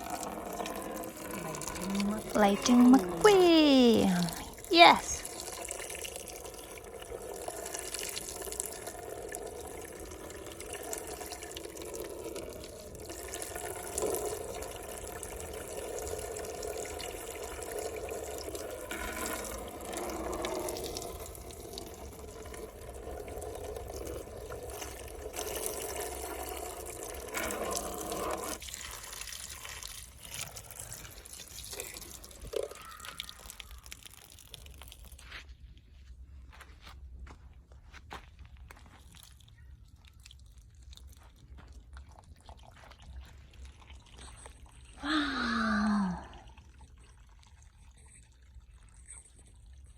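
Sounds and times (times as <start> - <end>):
water running: 0.0 - 35.2.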